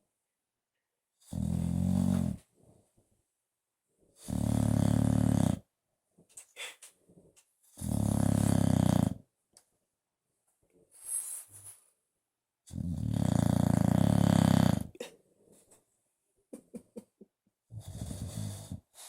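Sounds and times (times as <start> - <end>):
dog snoring: 1.2 - 2.4, 4.2 - 5.7, 7.7 - 9.2, 12.7 - 15.0, 17.7 - 18.9.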